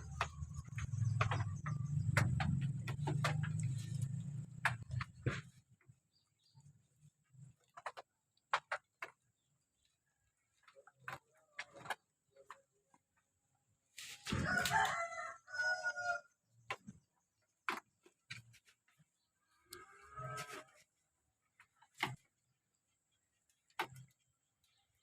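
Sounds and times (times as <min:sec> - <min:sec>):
rooster crowing: 0:14.3 - 0:16.3.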